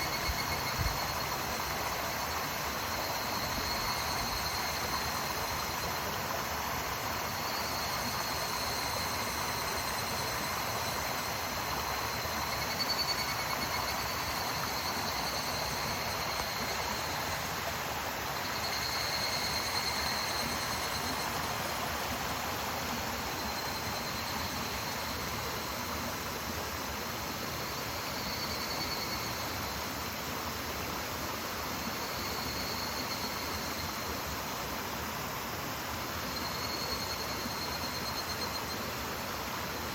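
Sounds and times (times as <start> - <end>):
cicadas calling: 0.0 - 30.0, 31.6 - 34.4, 36.1 - 39.4
stream flowing over rocks: 13.4 - 27.8.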